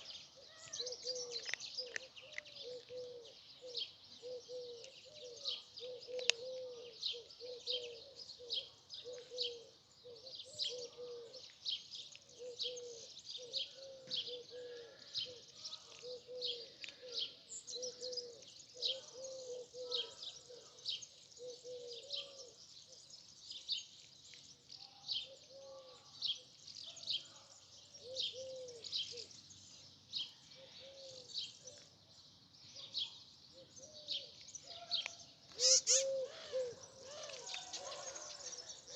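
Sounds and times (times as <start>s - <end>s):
short high bird chirps: 35.6s - 36.1s.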